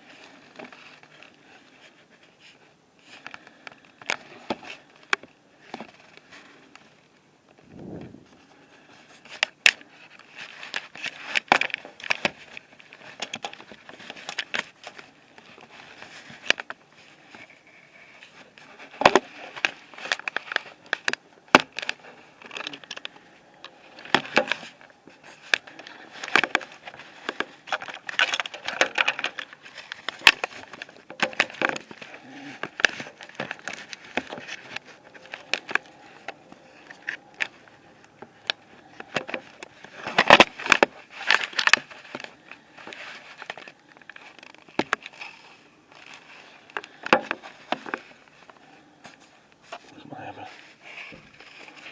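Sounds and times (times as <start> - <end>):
camera handling clicks and scrapes: 23.9 - 49.8.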